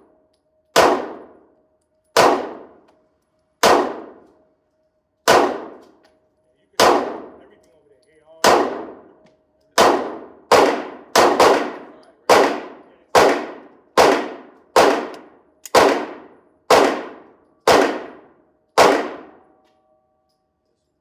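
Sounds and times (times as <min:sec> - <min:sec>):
handgun shots with echo: 0:00.8 - 0:01.4, 0:02.1 - 0:02.9, 0:03.6 - 0:04.3, 0:05.3 - 0:06.0, 0:06.8 - 0:07.4, 0:08.4 - 0:09.2, 0:09.8 - 0:19.5.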